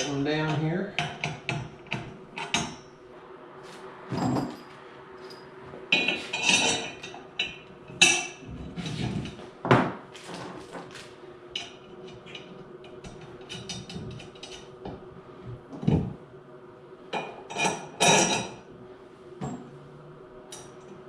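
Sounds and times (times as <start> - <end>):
metal hardware clanks: 6.0 - 9.4.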